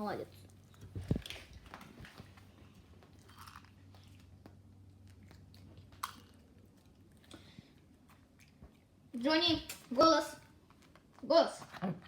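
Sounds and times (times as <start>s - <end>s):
dog crunching dry food: 0.5s - 7.3s.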